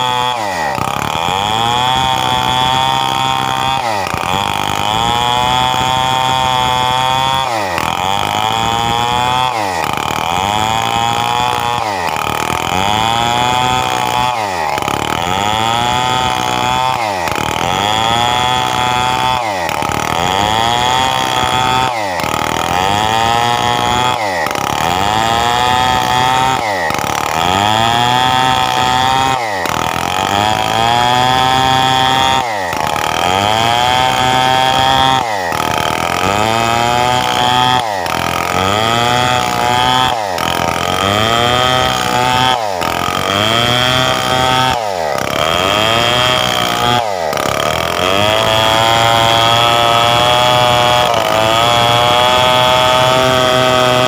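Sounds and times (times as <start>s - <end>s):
chainsaw sawing wood: 0.0s - 54.0s.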